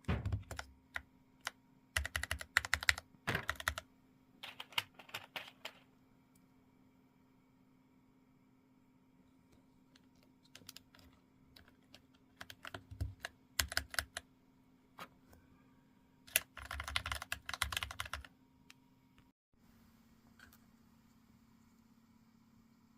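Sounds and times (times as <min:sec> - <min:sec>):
typing on mechanical keyboard: 0:00.0 - 0:03.8, 0:04.4 - 0:05.8, 0:10.5 - 0:14.2, 0:16.3 - 0:18.3.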